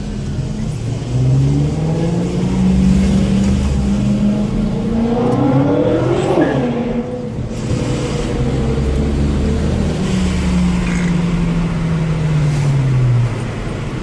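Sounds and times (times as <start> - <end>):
car engine accelerating hard: 0.0 - 14.0.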